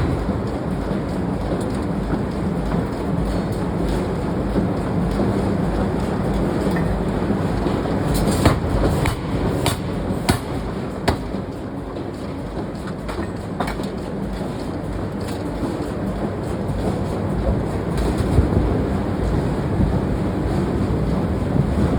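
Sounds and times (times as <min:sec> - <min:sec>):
sharp metal knocks: 0:08.4 - 0:11.4.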